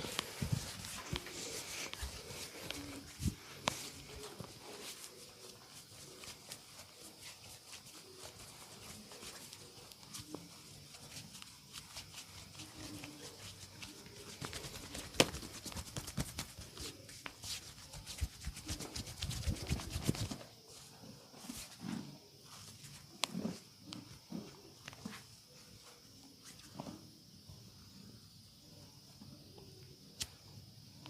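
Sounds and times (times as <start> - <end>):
hands rubbing skin: 0.0 - 20.8
massage slaps and taps: 14.3 - 20.4.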